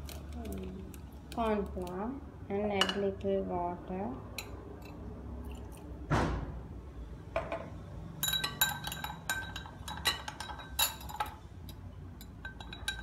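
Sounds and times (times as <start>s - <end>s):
spoon clinking against dish: 8.2s - 13.0s.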